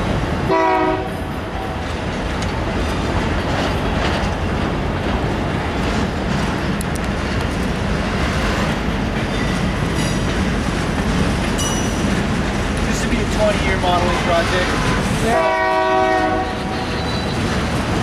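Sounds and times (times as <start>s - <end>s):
train rumble: 0.0s - 18.0s
train wheels clicking over rail joints: 1.2s - 18.0s
high wheel squeal: 16.4s - 17.8s.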